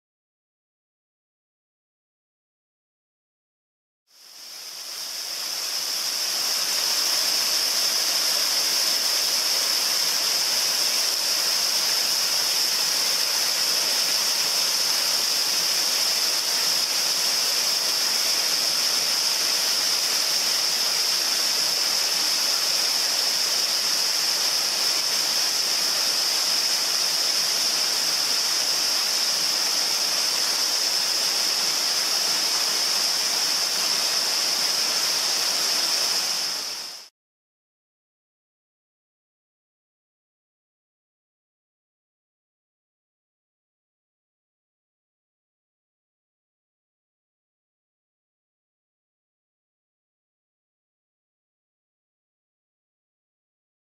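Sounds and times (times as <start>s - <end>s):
waterfall rushing: 4.4s - 37.1s.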